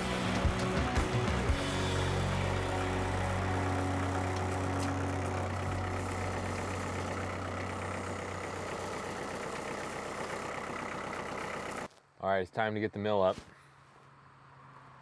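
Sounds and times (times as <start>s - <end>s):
heavy machine engine idling: 0.0s - 11.9s.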